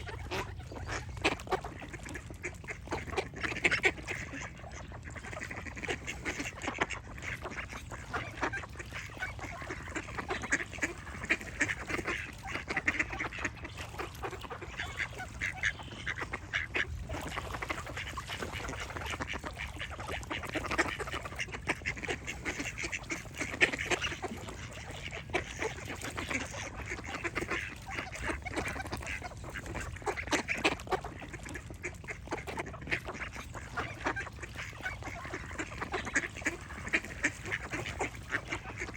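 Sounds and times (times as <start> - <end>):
ducks quacking: 0.0 - 38.9.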